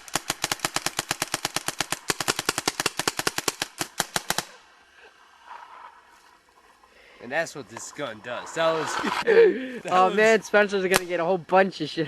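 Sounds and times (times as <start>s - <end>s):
paintball gun rapid firing: 0.0s - 4.6s.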